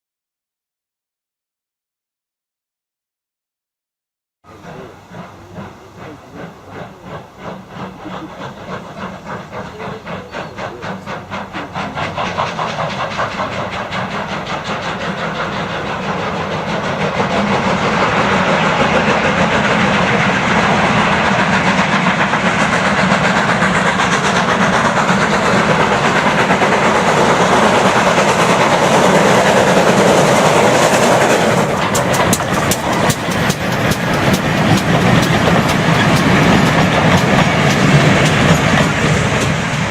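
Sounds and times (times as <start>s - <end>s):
steam locomotives chuffing: 4.5s - 39.9s
wheels clattering over rail joints: 27.8s - 39.7s.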